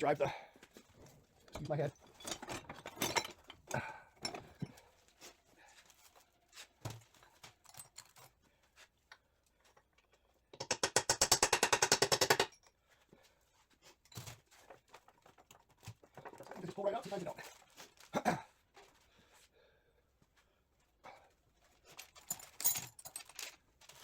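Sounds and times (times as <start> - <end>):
power tool hammering rapidly: 10.6 - 12.5.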